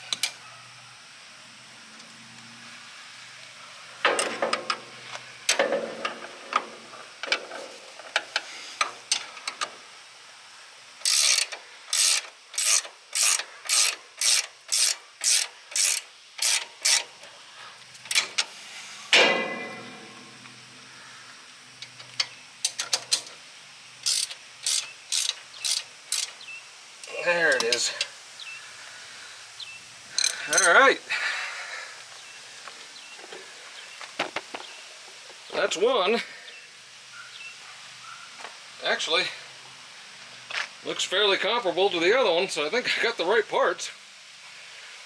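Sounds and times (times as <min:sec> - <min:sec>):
ratchet wrench clicking: 0:11.0 - 0:17.1, 0:18.1 - 0:18.5, 0:24.0 - 0:26.4, 0:30.2 - 0:30.8
metal clank with ring: 0:19.1 - 0:20.4.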